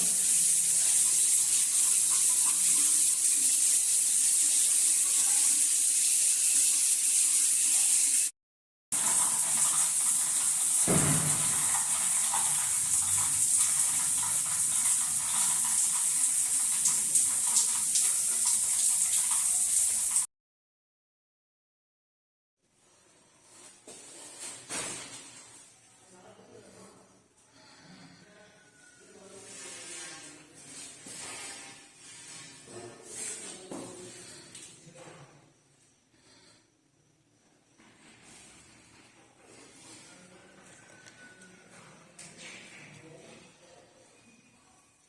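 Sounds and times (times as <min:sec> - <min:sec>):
running water: 0:00.0 - 0:08.3, 0:09.0 - 0:20.3.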